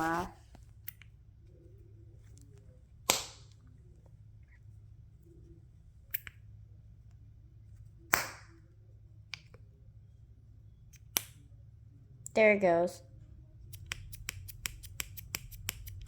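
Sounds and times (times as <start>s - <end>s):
plastic fidget toy snapping: 3.1s - 3.5s, 13.7s - 16.0s.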